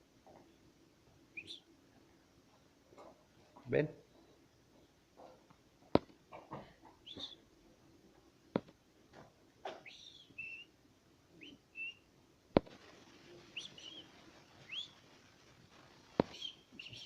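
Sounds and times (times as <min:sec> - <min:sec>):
puppies squeaking: 0:13.5 - 0:15.2.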